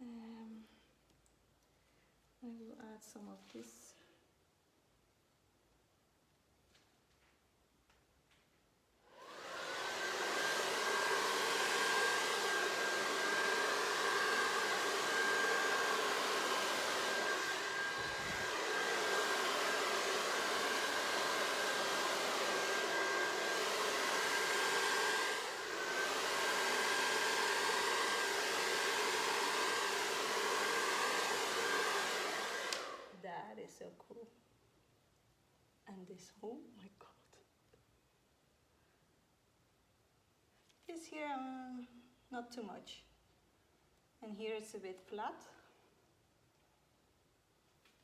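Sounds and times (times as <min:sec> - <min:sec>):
hair dryer running: 0:09.1 - 0:33.2.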